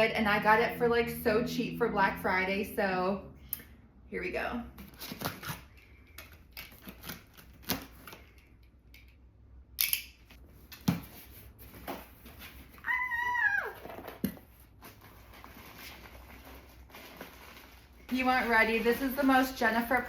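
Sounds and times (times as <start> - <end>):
packaging rustling and crinkling: 13.8 - 20.0.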